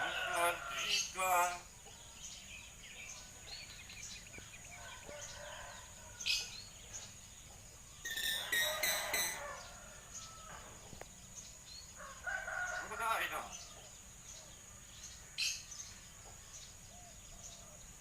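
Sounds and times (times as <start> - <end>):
myna bird calling: 8.0 - 10.6.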